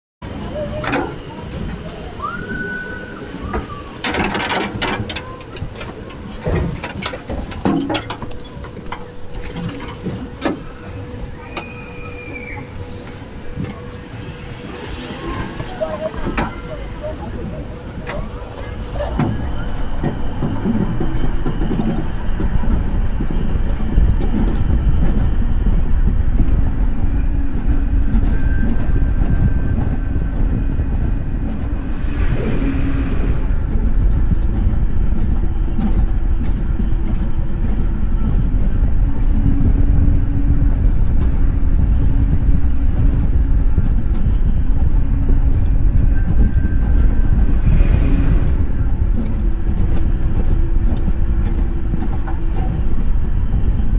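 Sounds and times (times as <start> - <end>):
wheels rumbling on rail: 0.2 - 53.9
hissing swells: 10.8 - 21.4.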